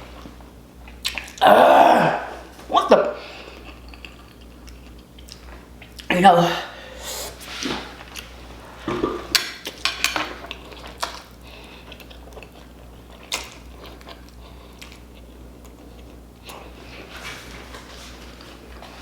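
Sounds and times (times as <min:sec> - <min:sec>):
wet chewing and smacking: 0:00.2 - 0:01.4, 0:03.5 - 0:06.1, 0:09.3 - 0:16.8.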